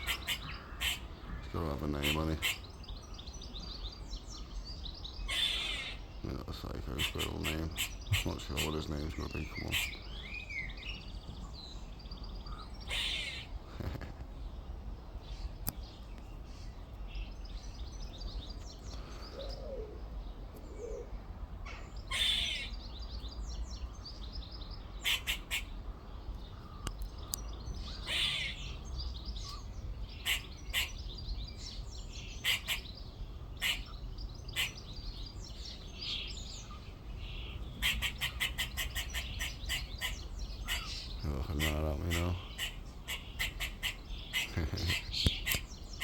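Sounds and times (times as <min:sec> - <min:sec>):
squirrel chirping: 0:33.6 - 0:46.0.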